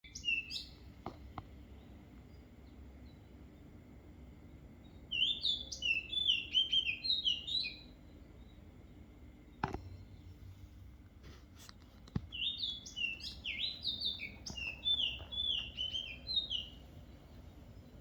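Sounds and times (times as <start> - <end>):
songbird singing: 0.0 - 18.0
low hum: 7.8 - 12.1.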